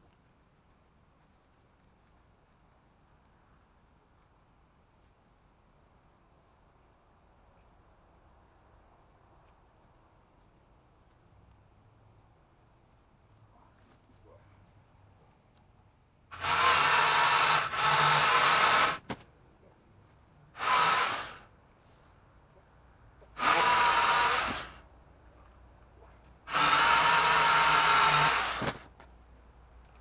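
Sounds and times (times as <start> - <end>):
electric pole saw motor whining: 16.3 - 19.0, 20.6 - 21.4, 23.4 - 24.8, 26.5 - 28.8.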